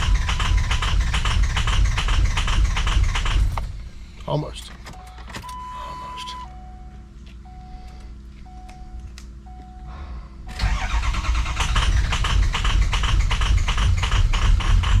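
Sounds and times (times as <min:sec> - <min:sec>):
diesel engine cranking: 0:00.0 - 0:05.7, 0:10.5 - 0:15.0.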